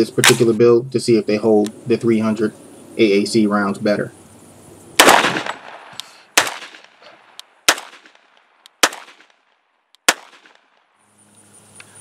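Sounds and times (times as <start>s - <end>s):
gunshots with ringing tail: 5.0s - 10.8s.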